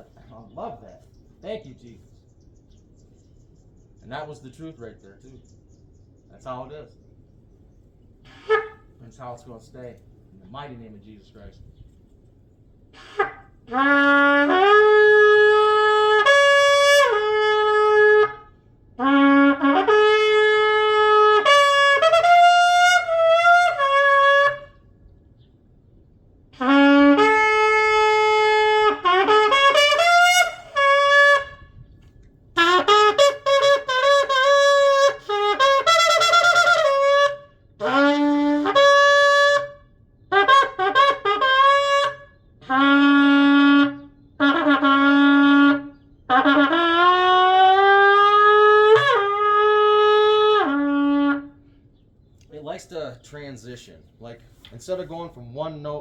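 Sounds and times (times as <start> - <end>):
shofar blasts: 8.3 - 9.3, 12.9 - 24.9, 26.6 - 32.0, 32.6 - 51.6.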